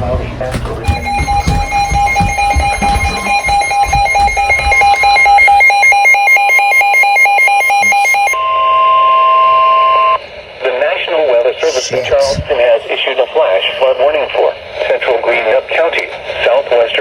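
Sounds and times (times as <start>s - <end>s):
warbling electronic alarm: 0.8s - 10.2s.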